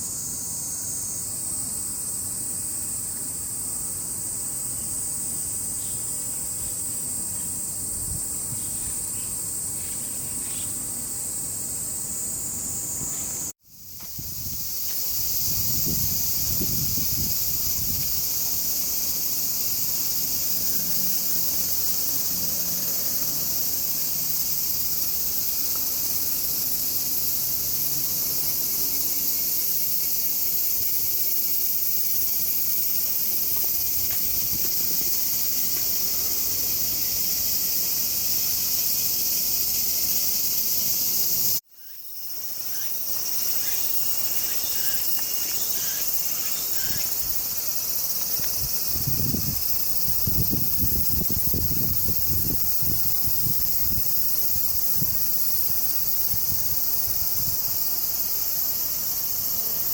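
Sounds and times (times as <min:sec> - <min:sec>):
insects chirring: 0:00.0 - 0:59.9.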